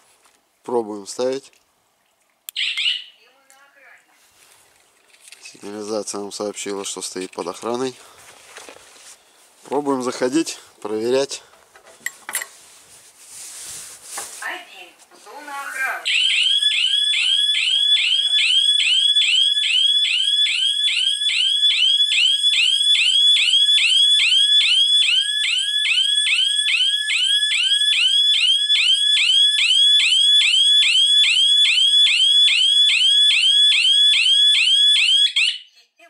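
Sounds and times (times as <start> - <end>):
alarm siren whooping: 2.6 - 3.1, 16.0 - 35.6.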